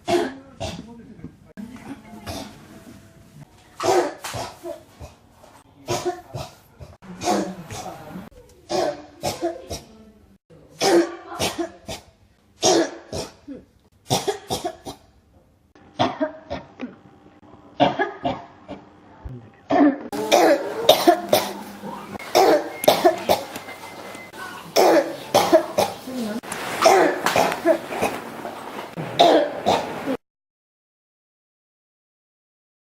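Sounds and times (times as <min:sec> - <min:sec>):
person coughing: 0:00.0 - 0:00.9, 0:02.2 - 0:02.6, 0:10.8 - 0:12.0, 0:12.6 - 0:15.1, 0:16.0 - 0:17.0, 0:17.8 - 0:18.5, 0:19.7 - 0:23.6, 0:24.8 - 0:26.0, 0:26.8 - 0:28.2, 0:29.0 - 0:30.2.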